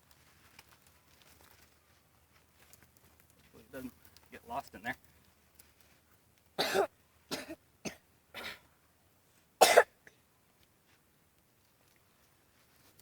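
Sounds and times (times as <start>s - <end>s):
person coughing: 6.6s - 8.6s, 9.6s - 9.9s.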